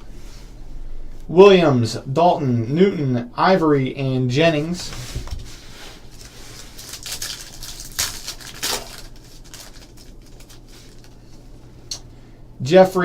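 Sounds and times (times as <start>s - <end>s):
cards and foil wrapper rustling: 4.7s - 11.6s.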